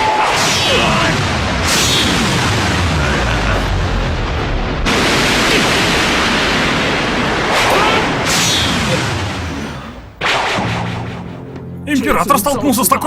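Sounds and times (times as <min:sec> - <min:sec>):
rushing sword fight sound effects: 0:07.5 - 0:10.4.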